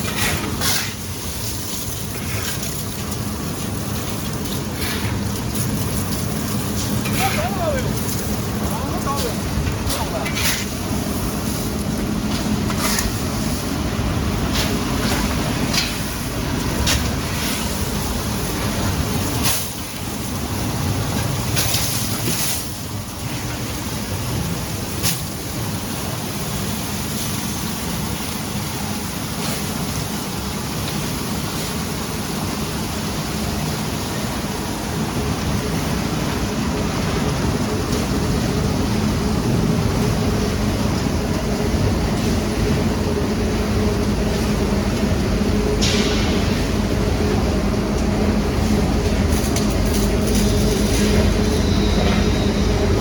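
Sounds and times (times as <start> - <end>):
industrial machinery rumbling: 0.0 - 29.2, 33.9 - 53.0.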